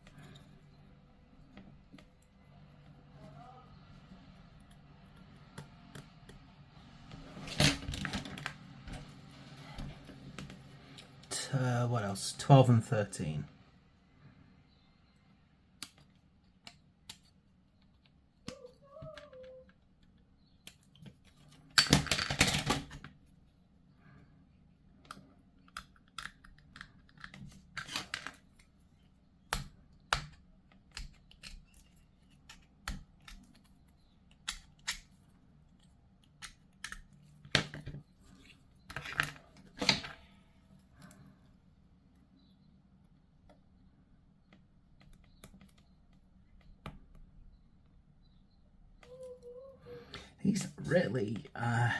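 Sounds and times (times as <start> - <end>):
plastic parts clicking: 25.0 - 28.7.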